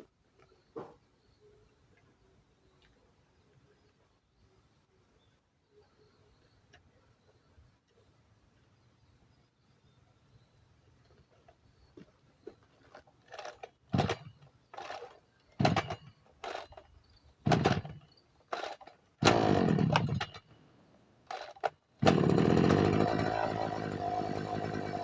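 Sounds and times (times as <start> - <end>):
two-stroke engine pull-started: 13.0 - 16.9, 17.5 - 20.5, 21.3 - 25.0.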